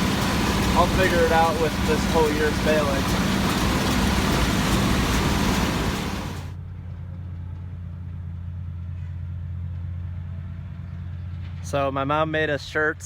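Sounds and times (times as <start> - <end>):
baler running: 0.0 - 6.5
low engine hum: 0.0 - 11.8.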